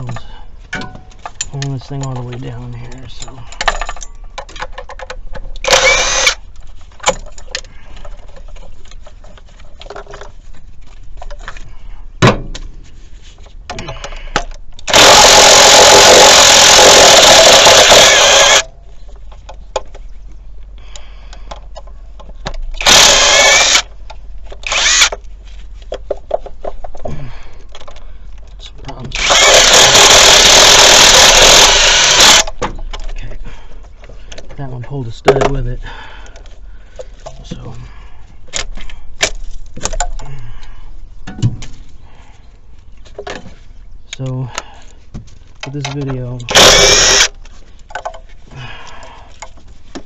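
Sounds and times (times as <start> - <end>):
impact wrench bursts: 5.6 - 6.4, 14.8 - 18.7, 22.8 - 23.9, 24.6 - 25.2, 29.1 - 32.6, 46.5 - 47.4.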